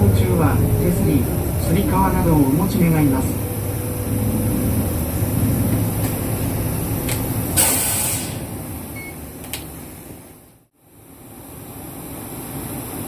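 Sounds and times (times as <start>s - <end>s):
bus diesel engine drumming: 0.0s - 10.7s
air hiss: 7.6s - 8.5s.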